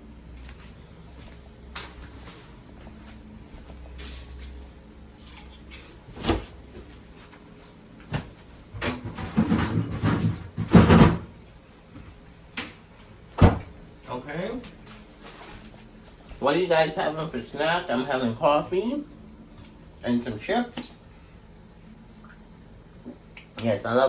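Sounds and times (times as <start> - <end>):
kitchen items clattering: 8.8 - 11.3.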